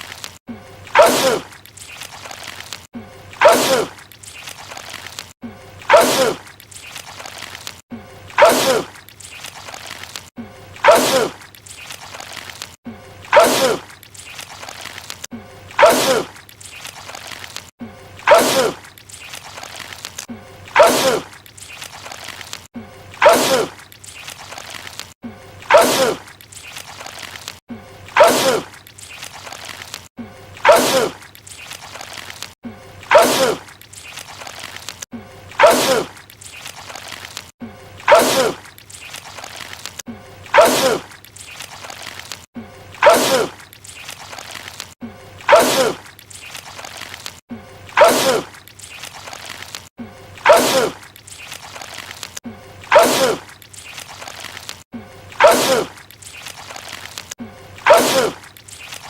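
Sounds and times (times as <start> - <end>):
man sneezing loudly: 57.8 - 58.4.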